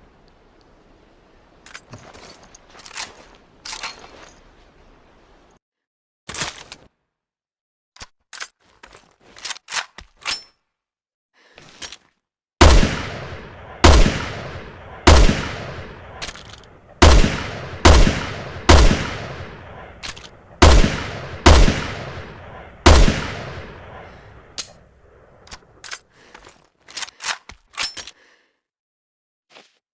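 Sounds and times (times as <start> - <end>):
rifle shots: 12.6 - 16.3, 17.0 - 24.4.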